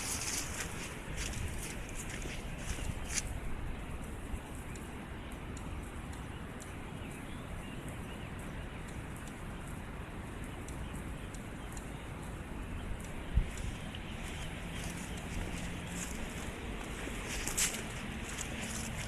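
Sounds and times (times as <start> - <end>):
faint footsteps: 0.0 - 3.4, 13.0 - 19.0
outdoor rumble: 8.0 - 19.0.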